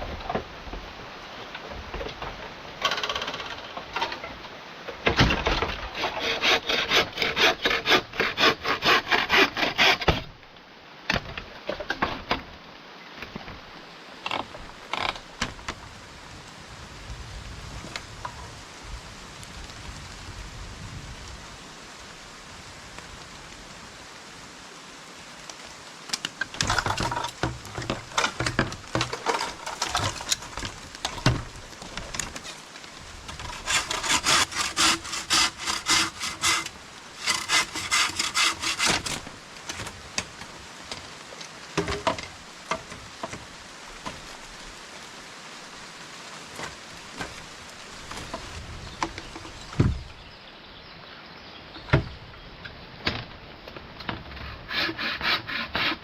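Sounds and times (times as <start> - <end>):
rain hiss: 0.0 - 56.0
hand saw cutting: 5.2 - 10.3, 26.6 - 31.4, 33.3 - 39.9, 54.4 - 56.0.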